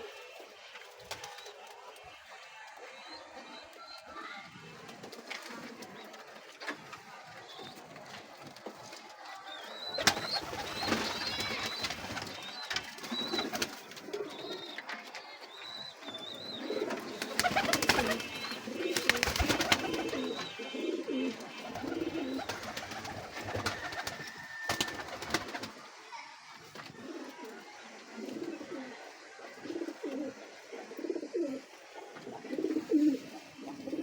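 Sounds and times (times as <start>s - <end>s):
pigeons cooing: 9.6s - 15.0s, 15.6s - 25.8s, 26.9s - 34.0s.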